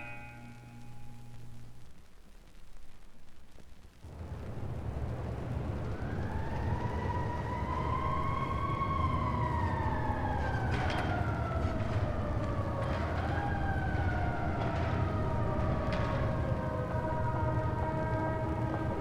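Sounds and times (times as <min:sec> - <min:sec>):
police siren wailing: 0:04.8 - 0:19.0.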